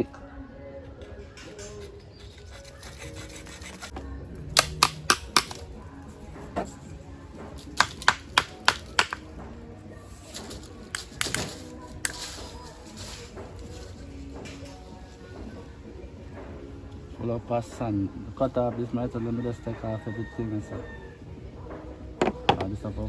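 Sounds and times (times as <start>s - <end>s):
sharp knocks on plastic pipe: 7.8s - 9.2s.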